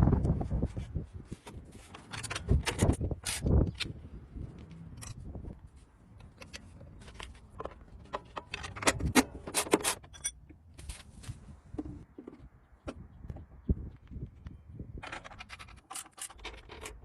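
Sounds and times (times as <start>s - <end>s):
small metal parts clinking: 15.0s - 17.0s.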